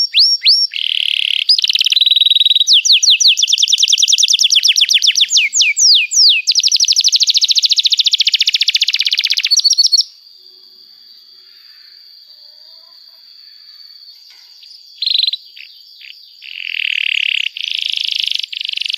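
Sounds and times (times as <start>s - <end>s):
canary singing rapid trills: 0.0s - 10.3s, 14.6s - 18.9s
faint high-pitched tone: 10.1s - 16.4s.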